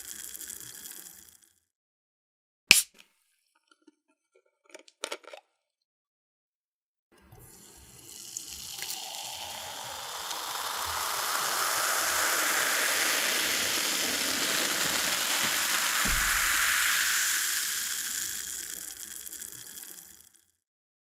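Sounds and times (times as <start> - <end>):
cola pouring and fizzing: 0.0 - 1.4, 7.2 - 20.4.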